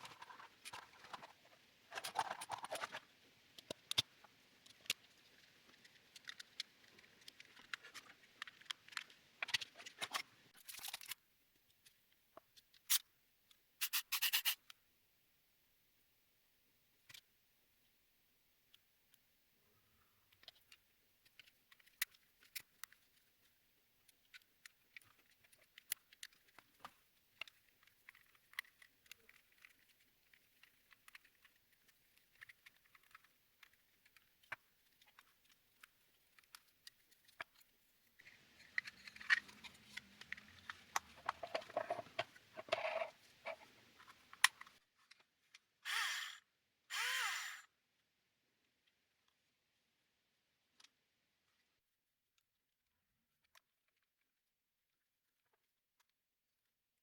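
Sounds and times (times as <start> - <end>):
clatter and rustling: 0.0 - 3.1, 24.9 - 45.2.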